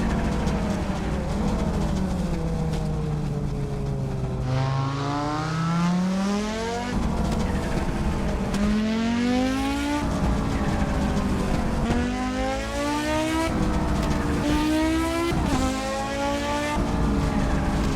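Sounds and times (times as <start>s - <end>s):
rally car engine accelerating: 0.0s - 17.9s.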